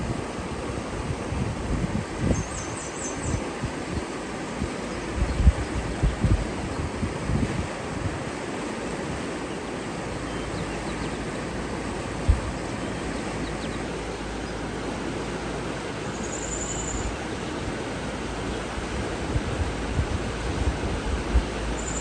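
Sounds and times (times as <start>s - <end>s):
rushing water: 0.0s - 22.0s
bird trill: 16.1s - 17.2s, 21.8s - 22.0s.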